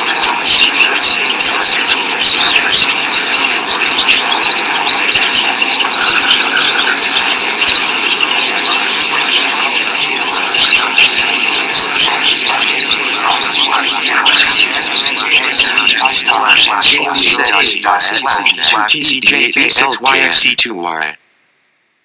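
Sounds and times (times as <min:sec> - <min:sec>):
rapid overlapping clicks: 0:00.0 - 0:20.3.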